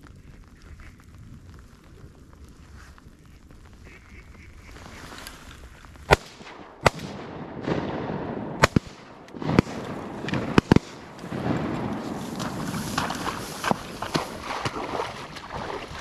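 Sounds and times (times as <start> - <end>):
shotgun blasts: 6.1 - 14.4.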